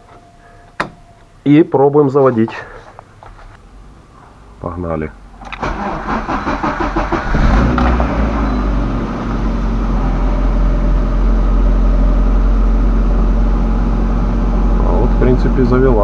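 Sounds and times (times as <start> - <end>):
car engine starting and idling: 3.6 - 16.0.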